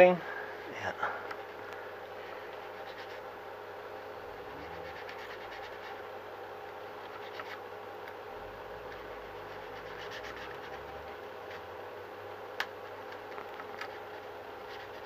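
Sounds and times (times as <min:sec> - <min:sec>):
steady background hum: 0:00.0 - 0:15.0
knife scratching plastic: 0:02.6 - 0:03.2, 0:04.5 - 0:06.0, 0:07.0 - 0:07.6, 0:08.9 - 0:11.6, 0:13.1 - 0:15.0.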